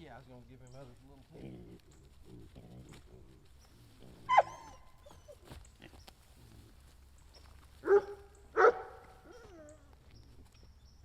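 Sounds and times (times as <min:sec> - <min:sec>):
dog barking: 0:04.3 - 0:05.3, 0:07.8 - 0:09.7.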